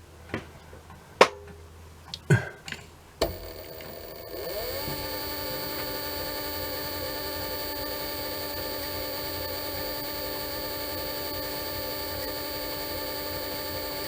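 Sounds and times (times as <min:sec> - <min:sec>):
lathe motor humming: 0:03.2 - 0:14.0.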